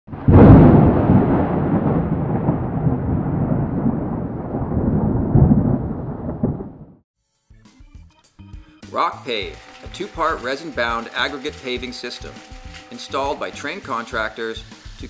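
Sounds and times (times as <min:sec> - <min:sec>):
loud crash: 0:00.1 - 0:07.0
rolling rumble: 0:00.1 - 0:07.0.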